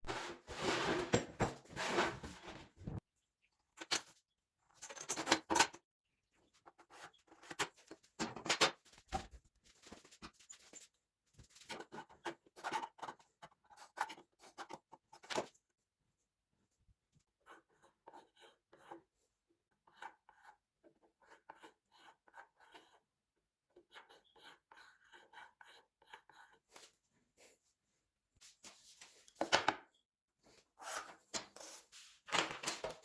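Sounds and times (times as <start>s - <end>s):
scraping and rustling handling noise: 0.0s - 3.0s, 31.0s - 33.0s.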